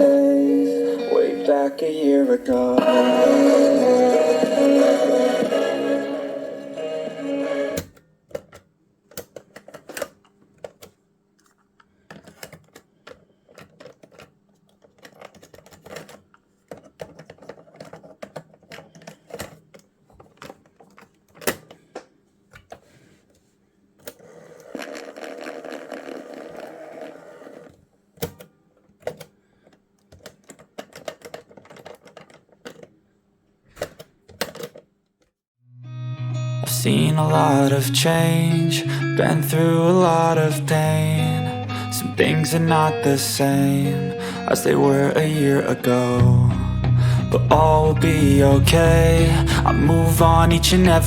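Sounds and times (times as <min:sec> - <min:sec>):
clicks and knocks of handling: 0:07.8 - 0:23.4, 0:28.2 - 0:33.0, 0:33.7 - 0:35.3.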